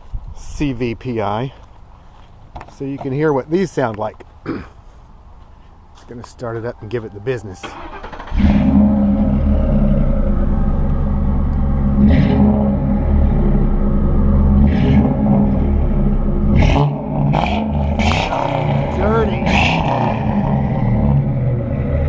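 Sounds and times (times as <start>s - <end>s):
car engine starting and running: 7.6s - 22.0s.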